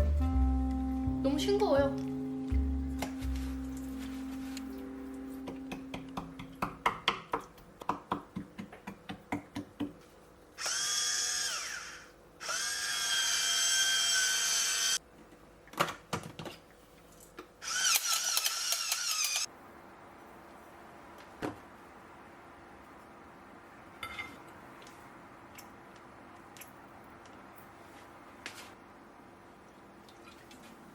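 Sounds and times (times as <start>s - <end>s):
small electric motor whining: 10.6s - 15.0s, 17.6s - 19.5s.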